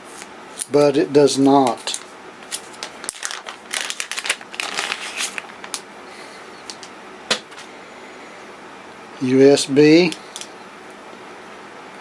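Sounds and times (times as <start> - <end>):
plastic packaging crinkling: 1.5 - 5.9.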